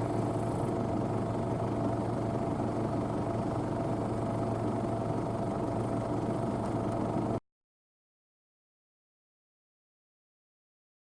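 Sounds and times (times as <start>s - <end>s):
combine harvester droning: 0.0s - 7.4s.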